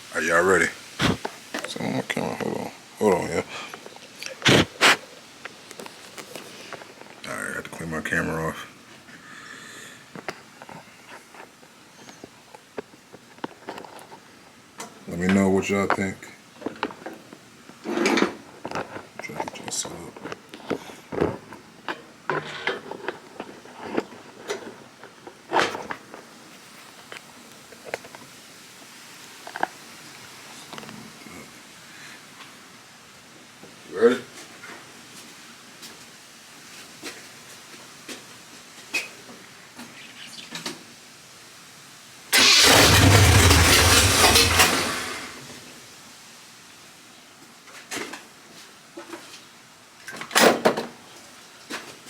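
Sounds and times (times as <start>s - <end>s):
pickup engine firing up: 42.3s - 45.6s.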